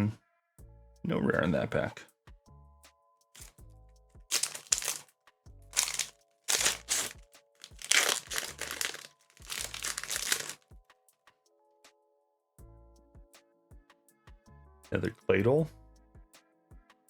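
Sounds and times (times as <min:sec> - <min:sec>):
quiet background music: 0:00.0 - 0:17.0
foil wrapper crinkling: 0:04.3 - 0:05.1, 0:05.8 - 0:10.6.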